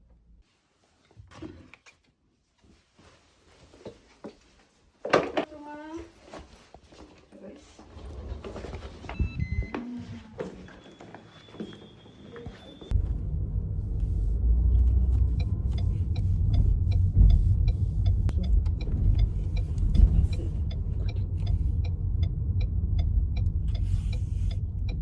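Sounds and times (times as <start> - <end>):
car rumbling in motion: 7.9 - 11.2, 11.8 - 25.0
regular ticking: 12.9 - 25.0.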